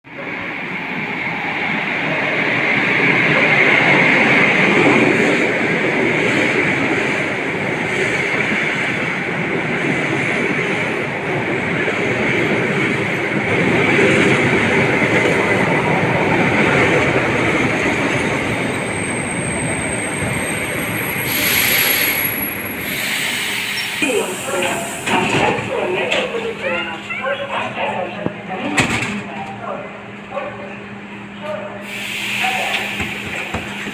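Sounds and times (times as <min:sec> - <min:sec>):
train wheels rumbling on rails: 0:00.1 - 0:30.3, 0:31.0 - 0:33.9
high hiss burst: 0:21.2 - 0:25.8, 0:31.8 - 0:33.9.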